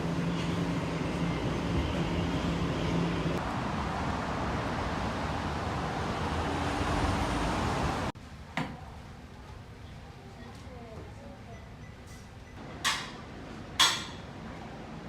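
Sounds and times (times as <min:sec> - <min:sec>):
moving vehicle rumble and hiss: 0:00.0 - 0:08.2.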